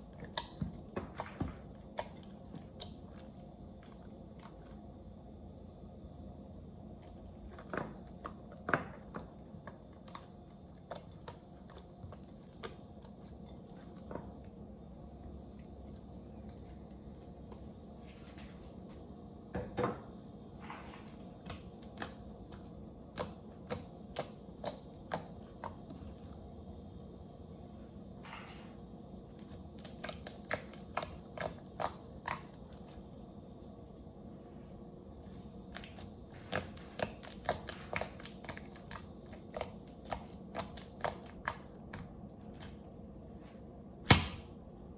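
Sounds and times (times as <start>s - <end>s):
slime clicking and popping: 29.4s - 32.9s, 35.7s - 42.8s.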